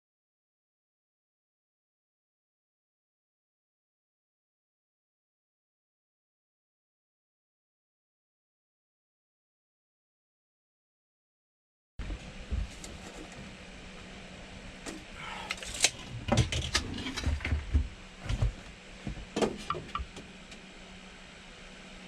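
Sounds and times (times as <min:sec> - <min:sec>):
steady low hum: 0:12.0 - 0:22.0.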